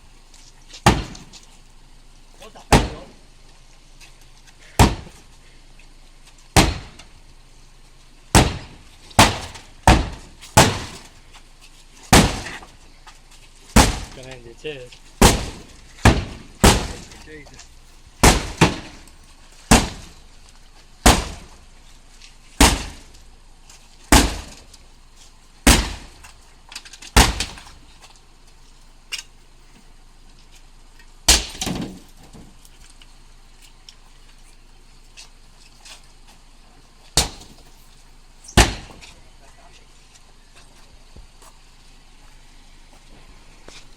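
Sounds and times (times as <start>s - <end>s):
sledgehammer blows on car: 0.8s - 1.4s, 2.6s - 3.2s, 4.7s - 5.3s, 6.5s - 7.2s, 8.3s - 11.2s, 12.1s - 12.8s, 13.7s - 14.4s, 15.2s - 17.4s, 18.2s - 20.3s, 21.0s - 21.7s, 22.6s - 23.2s, 24.1s - 24.8s, 25.6s - 26.3s, 27.1s - 27.9s, 31.2s - 32.3s, 37.1s - 37.8s, 38.5s - 39.2s.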